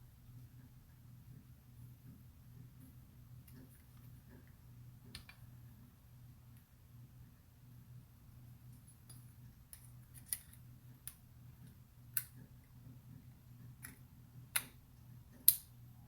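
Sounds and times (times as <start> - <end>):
low steady hum: 0.0 - 16.0
small metal parts clicking: 9.1 - 11.2.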